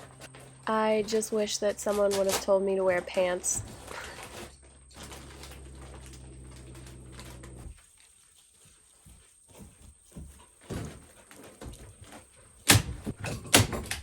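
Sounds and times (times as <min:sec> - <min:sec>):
light knocks and rustles: 0:06.1 - 0:14.0.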